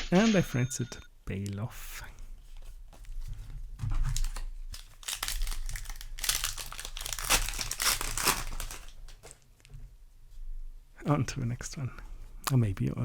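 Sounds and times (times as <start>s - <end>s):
foil wrapper crinkling and tearing: 4.0s - 9.4s.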